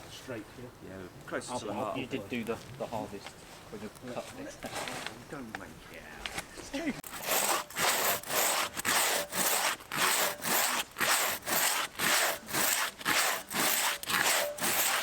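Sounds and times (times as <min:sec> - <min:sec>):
hand saw rasping through wood: 0:07.0 - 0:15.0.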